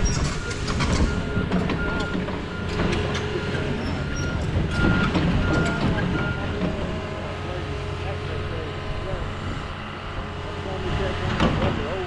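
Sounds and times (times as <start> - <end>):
backup alarm beeping: 0.0 - 7.4
diesel engine running: 0.0 - 12.0.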